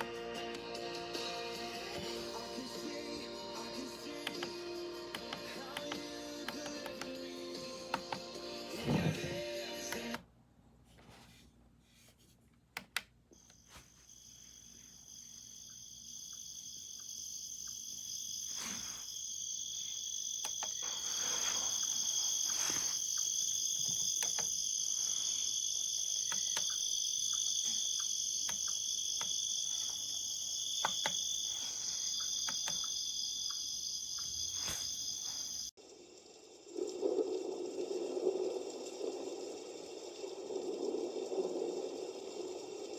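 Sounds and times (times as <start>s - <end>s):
crickets chirping from speaker: 0.0s - 10.2s, 13.4s - 42.9s
sharp clicks: 4.2s - 7.2s, 7.9s - 8.3s, 20.4s - 20.8s, 23.2s - 24.6s, 26.2s - 33.6s.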